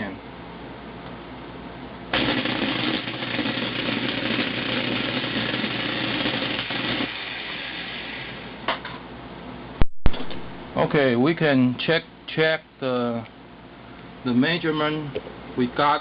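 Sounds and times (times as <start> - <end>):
electric drill running: 2.1 - 8.6.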